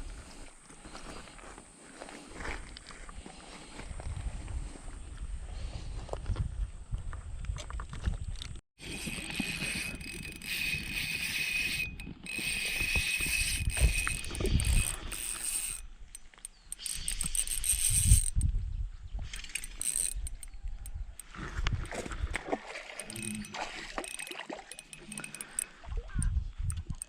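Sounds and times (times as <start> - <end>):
fishing reel whirring and clicking: 8.8 - 18.5, 19.3 - 22.0, 22.9 - 27.0.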